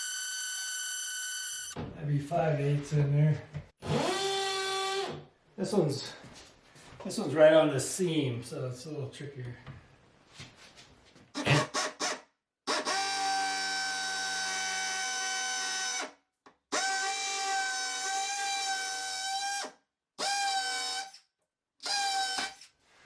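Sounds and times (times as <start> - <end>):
electric drill boring into stone: 16.8 - 21.1.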